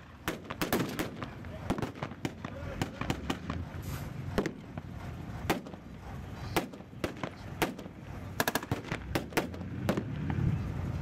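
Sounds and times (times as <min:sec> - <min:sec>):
blank gunshots: 0:00.2 - 0:03.6.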